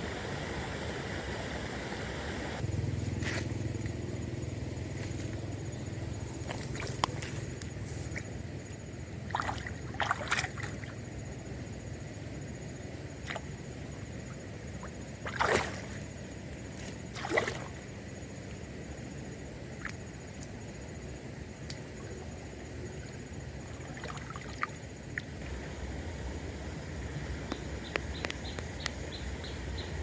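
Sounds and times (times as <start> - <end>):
water gurgles and splashes: 9.2 - 11.1, 14.2 - 17.9, 23.0 - 25.7.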